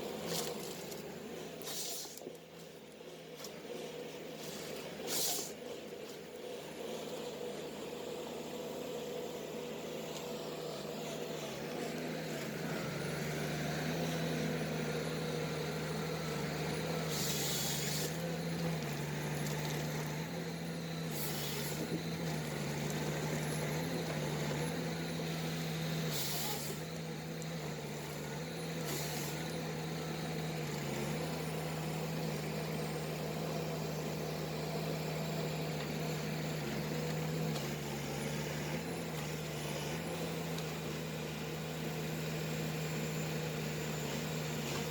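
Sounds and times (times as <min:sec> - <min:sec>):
diesel engine running: 0:00.0 - 0:44.9
short hisses: 0:01.6 - 0:02.2, 0:04.4 - 0:05.6, 0:17.1 - 0:18.2, 0:26.1 - 0:26.8.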